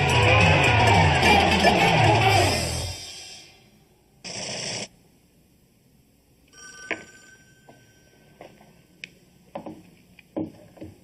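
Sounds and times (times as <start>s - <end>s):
telephone ringing: 6.6s - 8.2s.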